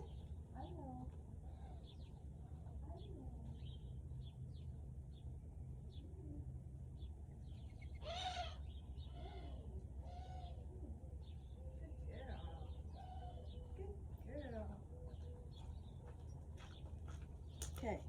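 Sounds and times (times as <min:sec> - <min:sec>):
birds chirping: 0:00.0 - 0:06.0, 0:07.0 - 0:18.0.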